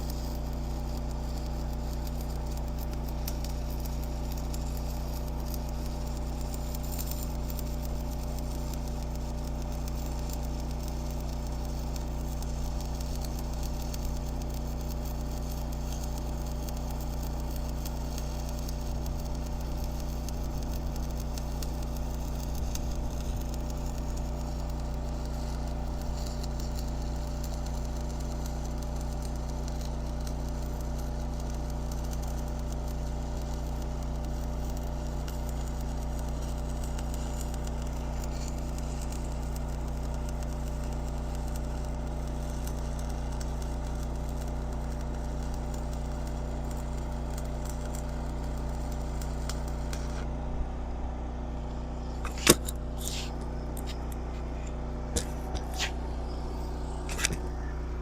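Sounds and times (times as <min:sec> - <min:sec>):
low machine hum: 0:00.0 - 0:58.0
welding arc crackling: 0:00.0 - 0:58.0.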